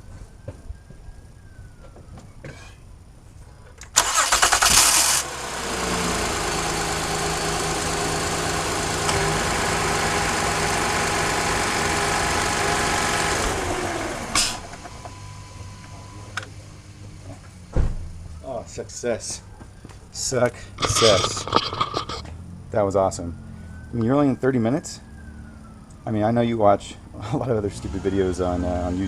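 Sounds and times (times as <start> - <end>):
starter motor cranking: 4.0 - 5.2, 20.8 - 22.2
car engine idling: 5.2 - 15.2.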